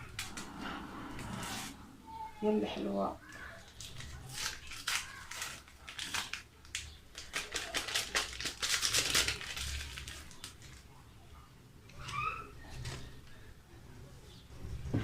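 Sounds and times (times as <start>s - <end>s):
sachet crinkling and rustling: 3.2s - 10.9s.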